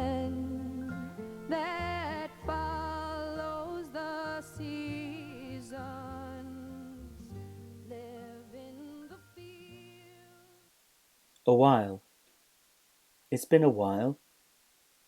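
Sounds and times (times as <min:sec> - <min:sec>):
person singing with vibrato: 0:00.0 - 0:10.6.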